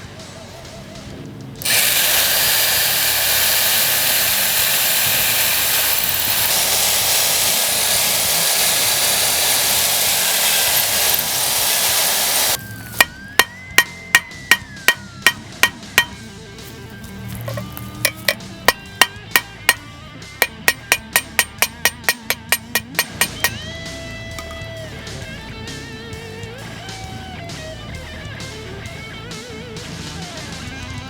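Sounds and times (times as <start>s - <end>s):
power tool running on wood: 1.6s - 19.8s, 20.4s - 23.6s
sharp taps: 6.0s - 16.2s, 17.0s - 19.8s, 20.4s - 23.6s.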